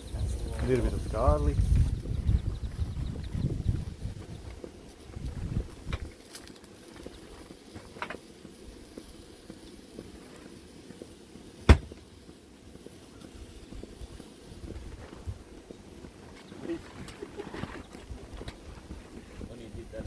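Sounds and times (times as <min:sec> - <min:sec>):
sharp knock: 0:11.7 - 0:12.0.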